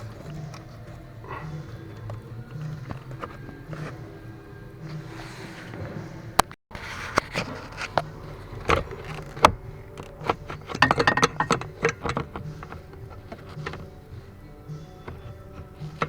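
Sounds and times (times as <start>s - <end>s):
plastic trim clicks and rattles: 7.8s - 16.0s.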